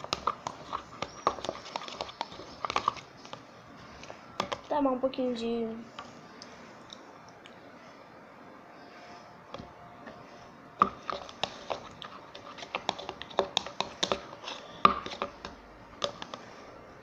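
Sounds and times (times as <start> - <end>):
slime squishing: 0.0 - 4.7, 10.8 - 16.5.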